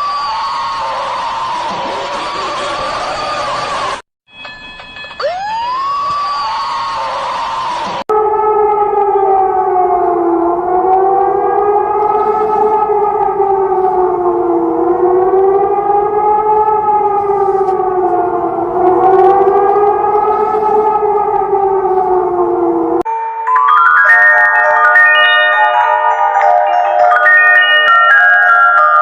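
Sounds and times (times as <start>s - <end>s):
warning siren wailing: 0.0s - 4.0s, 5.2s - 23.4s.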